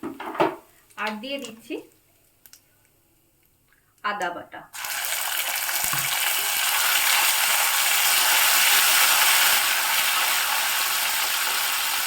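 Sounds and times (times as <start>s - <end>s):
spices sizzling in hot oil: 4.7s - 12.0s.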